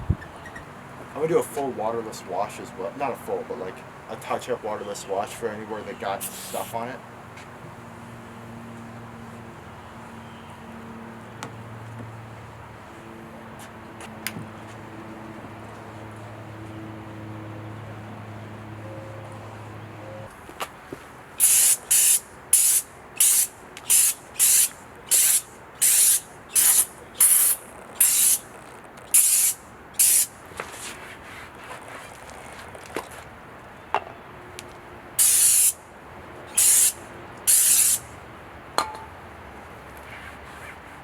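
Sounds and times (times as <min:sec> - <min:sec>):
spray bottle squirting: 0:06.2 - 0:06.7, 0:21.4 - 0:28.5, 0:29.1 - 0:30.3, 0:35.2 - 0:35.8, 0:36.6 - 0:38.0.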